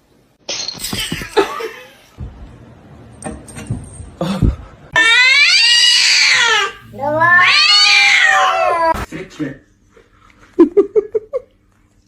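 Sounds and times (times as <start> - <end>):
cat meowing: 5.0 - 9.1.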